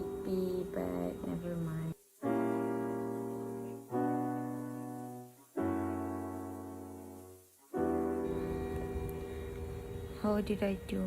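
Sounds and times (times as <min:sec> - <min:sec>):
slow piano chords: 0:00.0 - 0:11.0.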